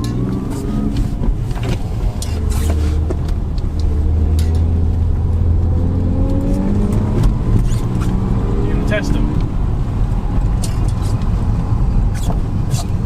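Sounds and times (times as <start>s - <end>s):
car engine: 0.0s - 13.0s
road rumble: 0.0s - 13.0s.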